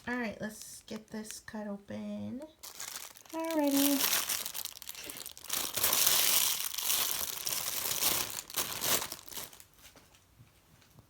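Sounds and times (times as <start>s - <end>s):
plastic packaging crinkling and tearing: 2.4s - 9.8s.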